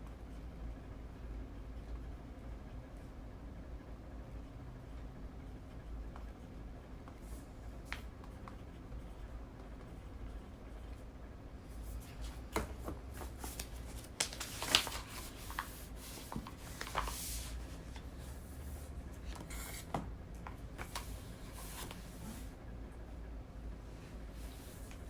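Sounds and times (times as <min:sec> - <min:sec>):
paper rustling: 0:11.9 - 0:18.1.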